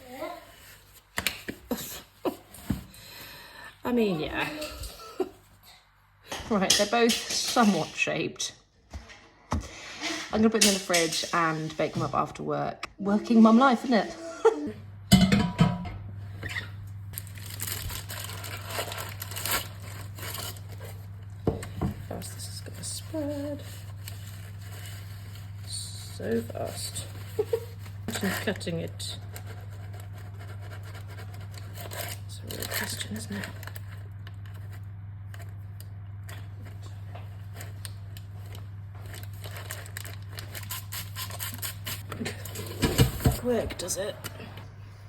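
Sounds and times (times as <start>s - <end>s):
low electrical hum: 0.0s - 45.0s
crinkling and rustling: 17.1s - 44.4s.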